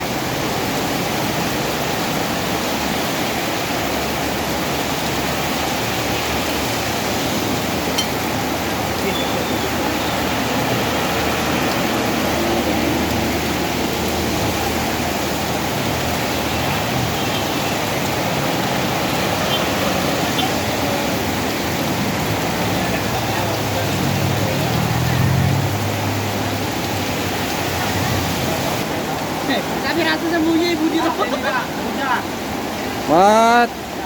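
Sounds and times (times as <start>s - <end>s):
heavy rain: 0.0s - 34.0s.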